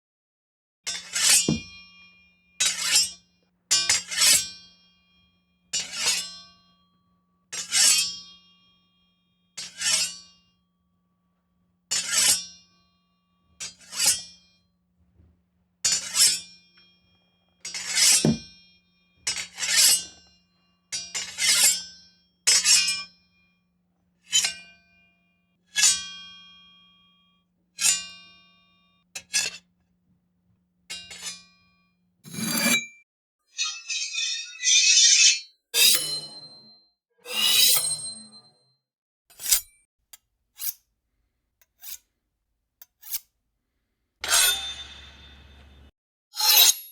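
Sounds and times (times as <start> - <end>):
blades drawn from sheaths: 32.3 - 32.9, 33.6 - 36.4, 39.3 - 39.8, 42.8 - 43.2.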